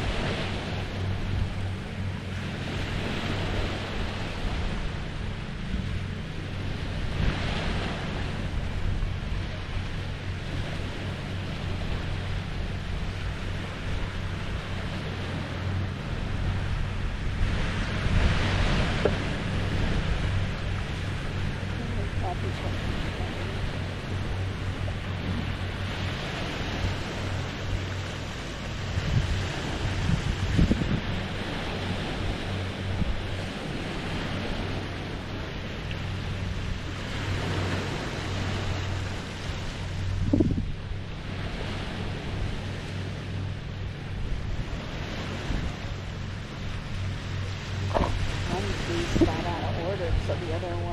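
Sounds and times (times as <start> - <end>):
waves lapping on shore: 0.0 - 50.9
wind buffeting microphone: 0.0 - 50.9.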